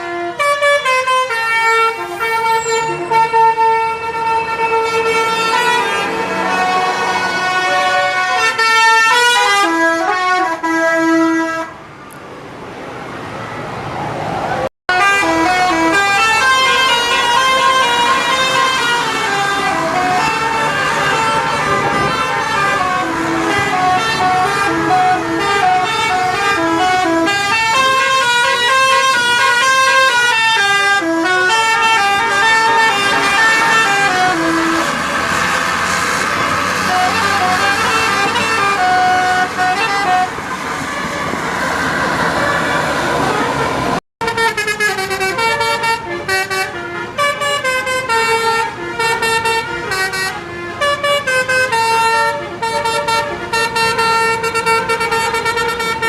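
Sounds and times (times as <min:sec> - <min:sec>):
multi-tone bus horn tune: 0:00.0 - 0:11.9, 0:14.9 - 0:56.0.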